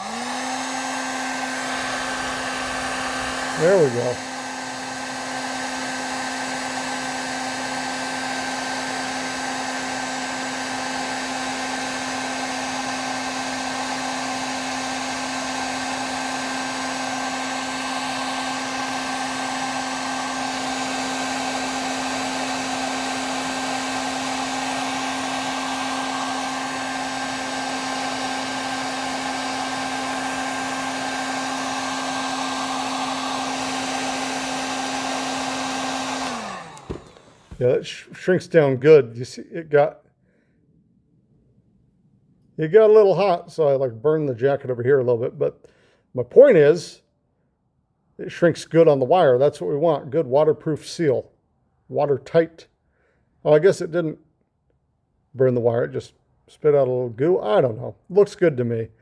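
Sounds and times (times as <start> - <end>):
heat gun blowing hiss: 0.0 - 37.8.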